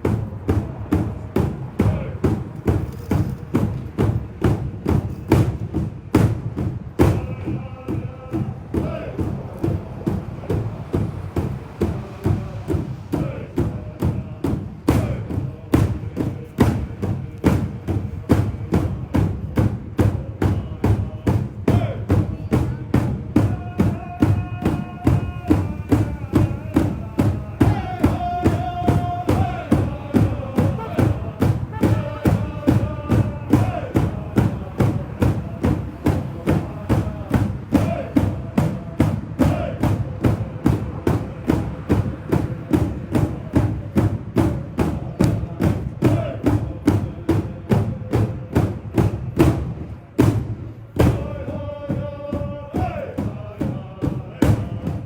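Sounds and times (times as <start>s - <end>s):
drum beaten steadily: 0.0s - 55.0s
high sung vocals: 23.4s - 38.7s.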